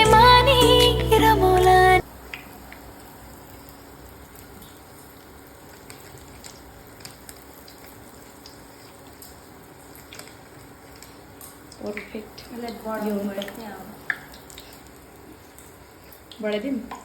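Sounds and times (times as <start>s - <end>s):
batter deep-frying in oil: 2.0s - 17.0s.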